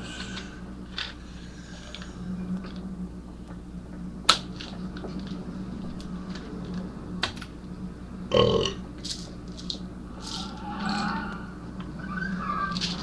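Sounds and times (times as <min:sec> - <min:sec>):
steady low hum: 0:00.0 - 0:13.0
man burping: 0:08.3 - 0:08.8.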